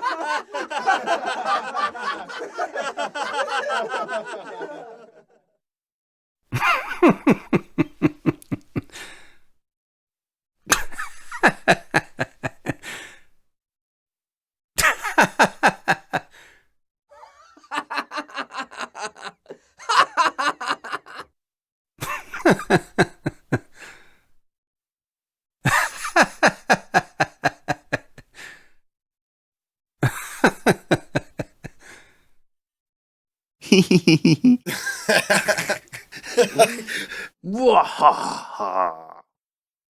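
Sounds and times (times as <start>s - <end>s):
man laughing: 0.0s - 5.4s, 6.6s - 9.1s, 10.7s - 13.0s, 14.8s - 16.4s, 17.2s - 21.3s, 22.0s - 23.6s, 25.7s - 28.0s, 30.0s - 31.6s, 33.6s - 39.2s.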